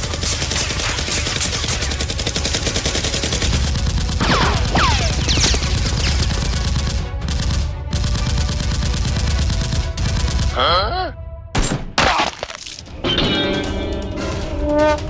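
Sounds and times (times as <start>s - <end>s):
rapid automatic gunfire: 0.0s - 10.6s.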